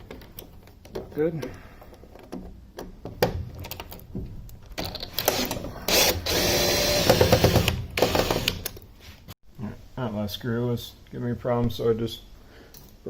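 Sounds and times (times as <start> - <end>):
power drill driving screw: 5.2 - 8.7.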